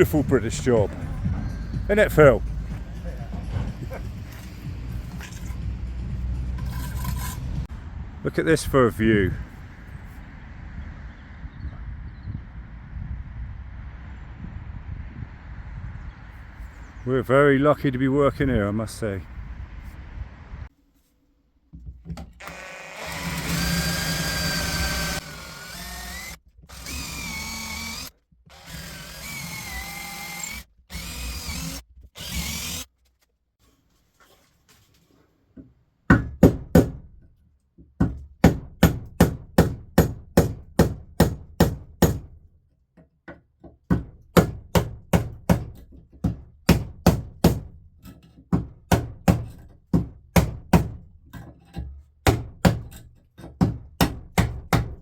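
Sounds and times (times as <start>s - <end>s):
power grinder whining: 22.4s - 32.3s.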